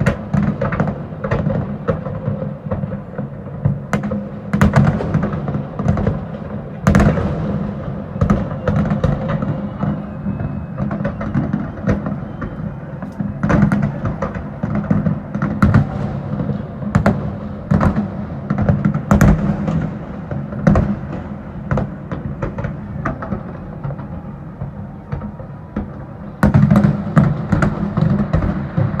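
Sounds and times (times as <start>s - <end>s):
fireworks bursting: 0.0s - 29.0s.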